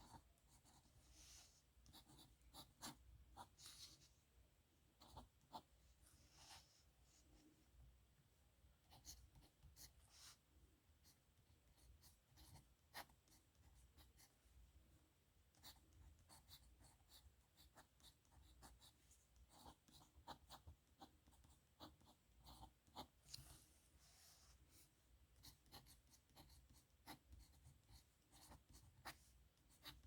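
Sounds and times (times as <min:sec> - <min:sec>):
pen nib scratching on paper: 0:15.6 - 0:23.1, 0:25.4 - 0:30.0.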